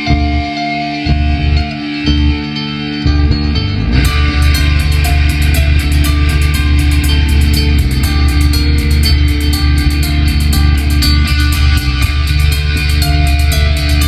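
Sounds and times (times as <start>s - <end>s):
guitar: 0.0s - 14.0s
heavy bass line: 0.0s - 14.0s
rising sweep: 1.1s - 14.0s
drums with cymbals: 4.0s - 14.0s.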